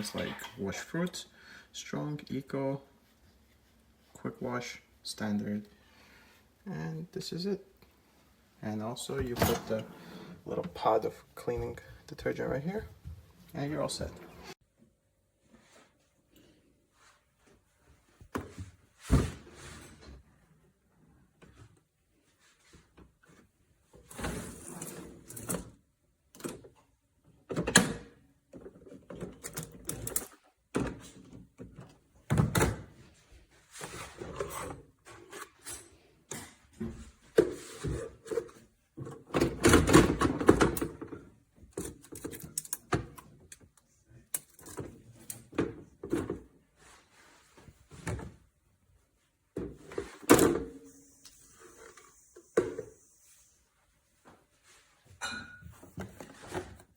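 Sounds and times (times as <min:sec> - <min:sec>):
dishes knocking and rattling: 0:55.2 - 0:56.2.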